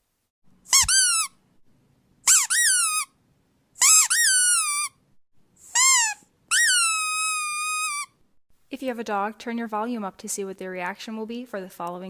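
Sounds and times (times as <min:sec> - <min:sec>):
high-pitched squeaks: 0:00.7 - 0:01.3, 0:02.3 - 0:03.1, 0:03.8 - 0:05.0, 0:05.6 - 0:08.2.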